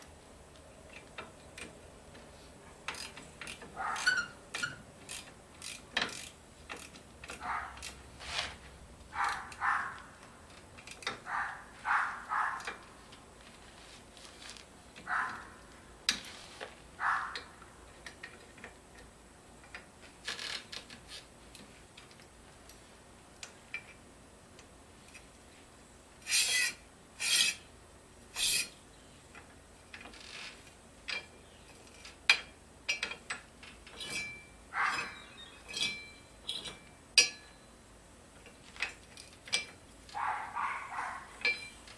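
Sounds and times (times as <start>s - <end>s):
metal tools clinking and clanking: 31.1s - 37.7s, 38.8s - 40.3s, 41.4s - 41.9s.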